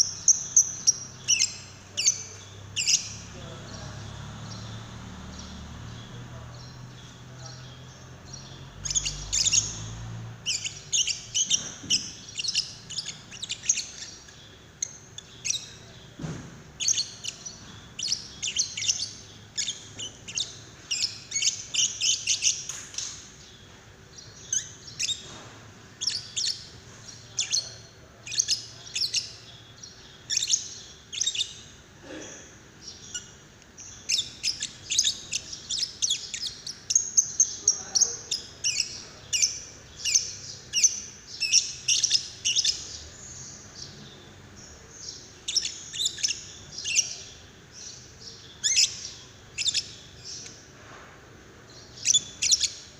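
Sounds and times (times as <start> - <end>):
lovebird chirping: 0.0 - 50.8, 51.6 - 52.9
faint knocks: 16.2 - 16.7.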